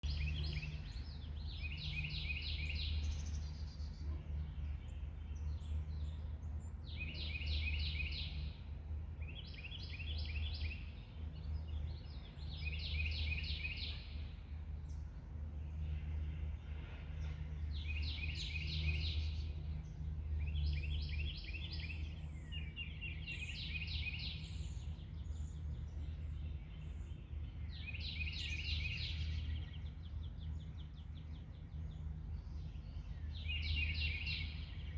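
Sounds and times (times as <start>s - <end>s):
songbird trilling: 0.0s - 4.0s, 6.9s - 8.6s, 9.2s - 14.3s, 17.7s - 19.6s, 20.4s - 34.9s.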